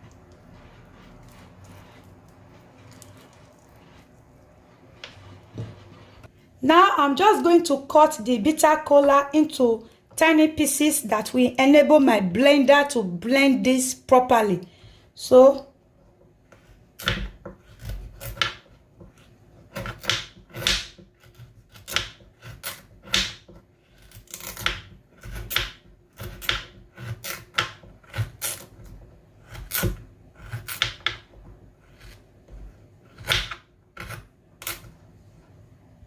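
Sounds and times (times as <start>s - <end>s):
knife chopping on cutting board: 16.6s - 23.6s, 24.3s - 28.7s, 29.4s - 34.9s.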